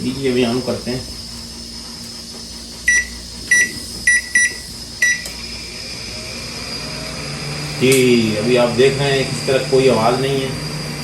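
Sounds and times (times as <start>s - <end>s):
microwave fan humming: 0.0s - 11.0s
microwave keypad beeping: 2.9s - 5.3s.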